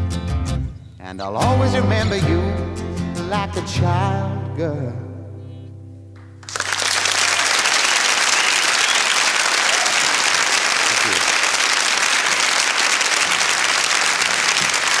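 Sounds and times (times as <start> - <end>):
audience applauding: 6.3 - 15.0.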